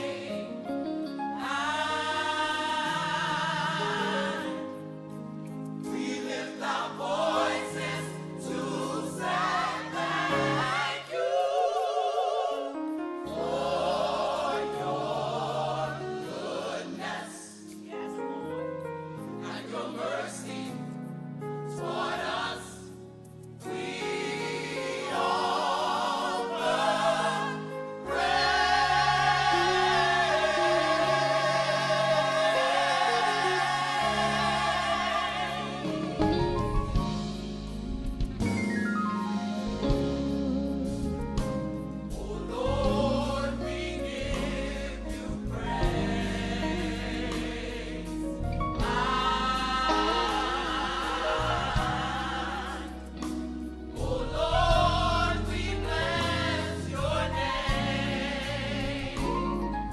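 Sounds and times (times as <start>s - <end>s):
gospel choir singing: 0.0s - 38.6s, 39.2s - 59.9s
sustained low instrumental chords: 33.2s - 56.2s.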